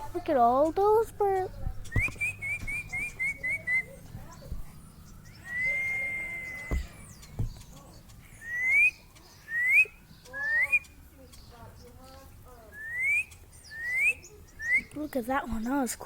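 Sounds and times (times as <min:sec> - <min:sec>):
whistled notes: 0:00.3 - 0:07.7, 0:08.3 - 0:11.0, 0:12.7 - 0:15.1.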